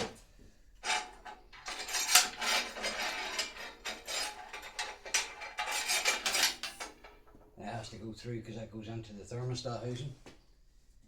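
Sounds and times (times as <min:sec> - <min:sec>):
metal rod clinking and scraping: 0:00.8 - 0:07.3.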